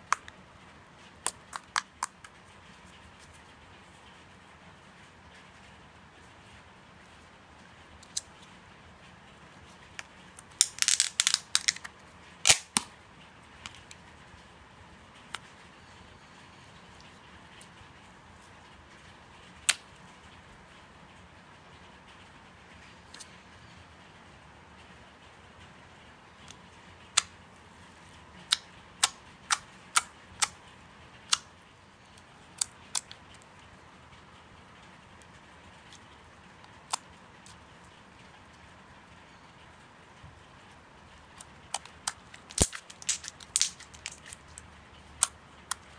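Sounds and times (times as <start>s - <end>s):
slime popping and crackling: 10.5s - 12.9s, 41.8s - 44.6s.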